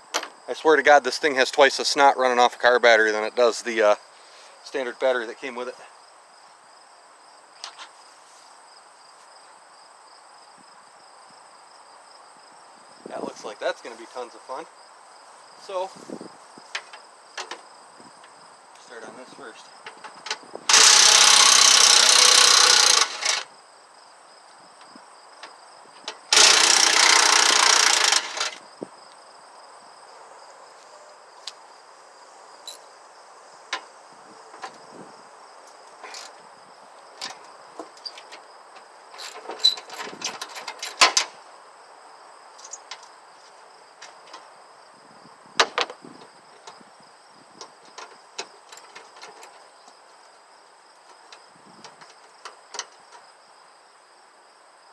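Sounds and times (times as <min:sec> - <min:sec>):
impact wrench hammering: 0:26.3 - 0:28.5
metal parts clattering: 0:39.1 - 0:41.3.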